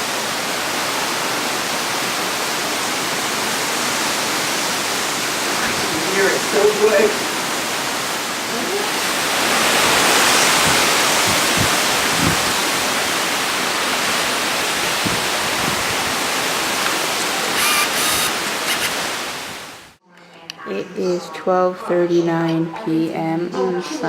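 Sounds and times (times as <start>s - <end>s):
heavy rain: 0.0s - 20.0s
hurricane wind: 0.0s - 20.0s
wind gusts buffeting microphone: 3.2s - 19.9s.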